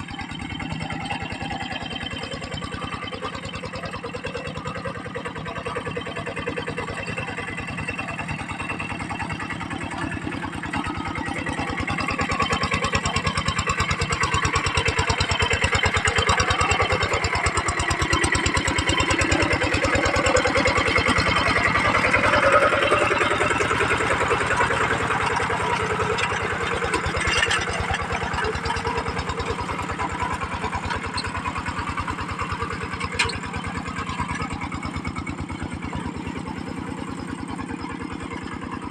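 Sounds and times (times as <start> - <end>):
tractor diesel engine chugging: 0.0 - 38.9.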